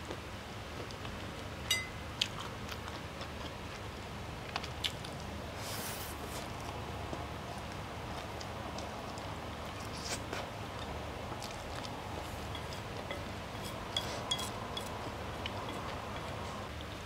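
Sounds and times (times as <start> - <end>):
fork scraping on plate: 12.4 - 14.9.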